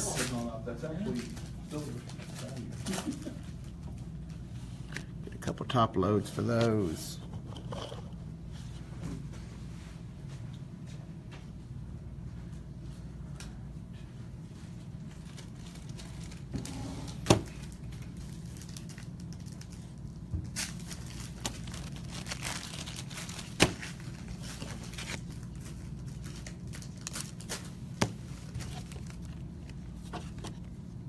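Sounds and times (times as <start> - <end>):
plastic crinkling: 0.1 - 4.1, 15.0 - 30.9.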